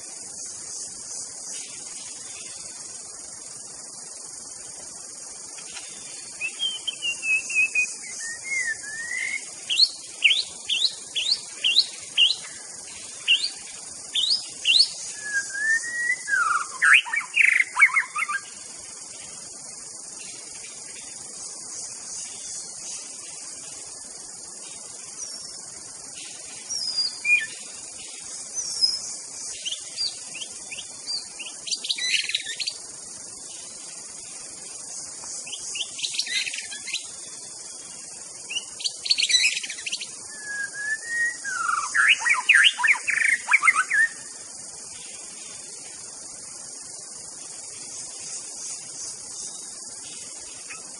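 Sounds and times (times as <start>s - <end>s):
high insect drone: 0.0s - 50.9s
bird singing whistled phrases: 6.4s - 12.6s, 13.3s - 18.4s, 38.5s - 44.2s.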